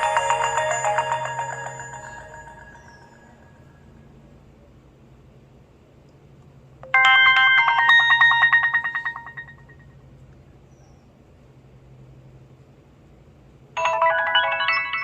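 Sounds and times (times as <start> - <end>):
bright chiming ringtone: 0.0 - 3.7, 6.8 - 9.9, 13.8 - 15.0.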